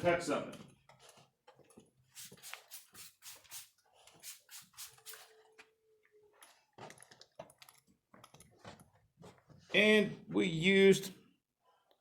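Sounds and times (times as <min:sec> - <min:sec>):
trigger sprayer hissing squirts: 0:02.2 - 0:05.3.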